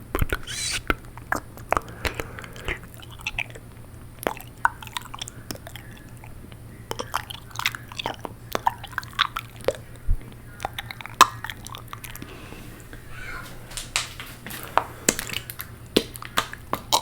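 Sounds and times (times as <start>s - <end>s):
tongue clicks: 0.4s - 0.8s
wet lip smacks: 0.4s - 0.8s.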